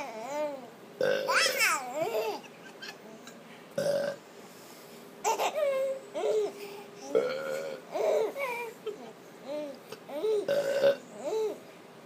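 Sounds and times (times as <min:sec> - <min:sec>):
baby laughing and babbling: 0:00.0 - 0:03.3, 0:05.2 - 0:07.2, 0:07.9 - 0:10.5, 0:11.1 - 0:11.7.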